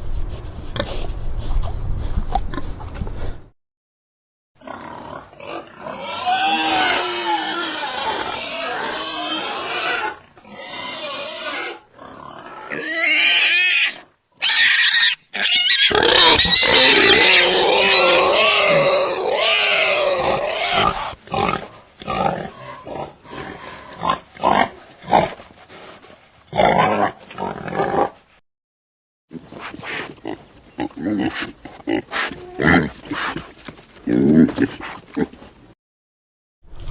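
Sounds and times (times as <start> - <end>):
wild boar calling: 4.6 - 24.7.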